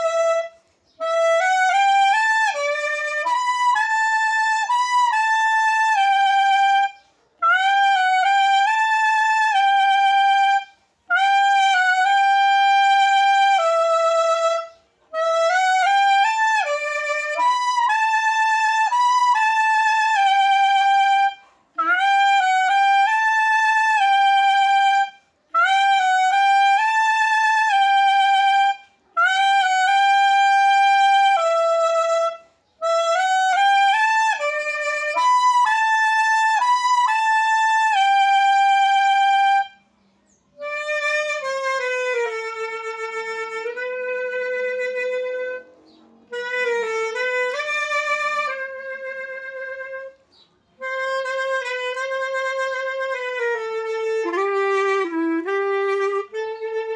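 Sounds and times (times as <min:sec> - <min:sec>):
solo clarinet playing hymn melody: 0:00.0 - 0:56.9.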